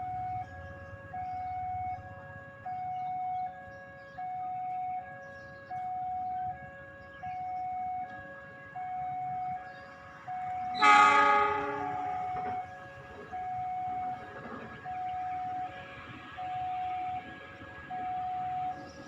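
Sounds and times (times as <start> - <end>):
electronic two-tone warning chime: 10.3 - 15.7
train horn blast: 10.6 - 13.2.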